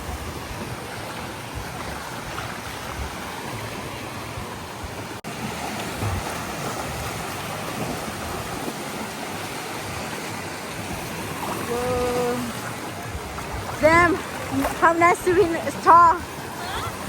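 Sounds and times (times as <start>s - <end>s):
ocean surf washing on beach: 0.0s - 17.0s.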